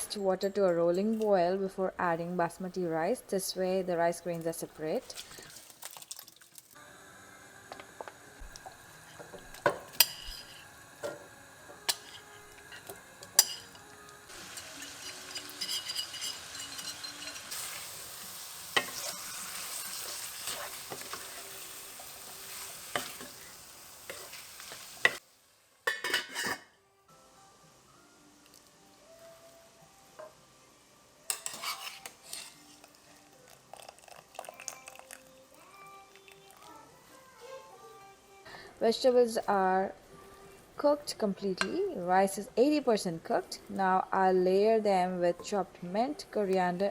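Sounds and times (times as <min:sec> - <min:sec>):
food sizzling: 0:02.0 - 0:26.7, 0:27.5 - 0:38.0
spoon clinking against pot: 0:11.8 - 0:13.8, 0:14.6 - 0:17.6, 0:25.8 - 0:26.6, 0:31.3 - 0:32.5.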